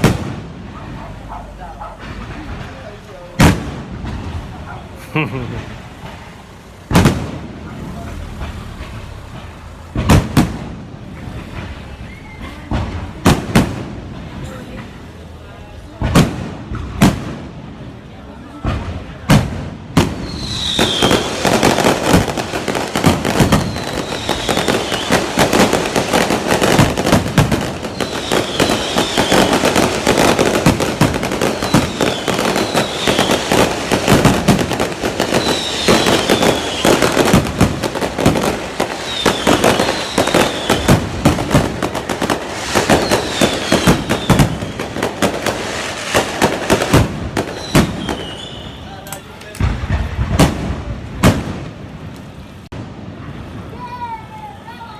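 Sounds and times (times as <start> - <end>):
fireworks bangs and crackling: 0.0 - 54.9
falling firework whistles: 11.5 - 13.0, 20.0 - 51.6.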